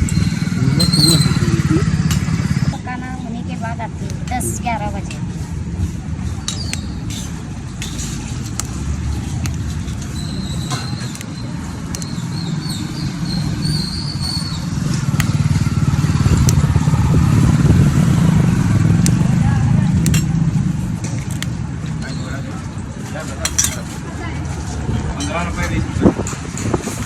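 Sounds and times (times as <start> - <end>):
traffic engine rumble: 0.0 - 27.0
scattered clicks and knocks: 5.8 - 13.6, 14.8 - 22.2.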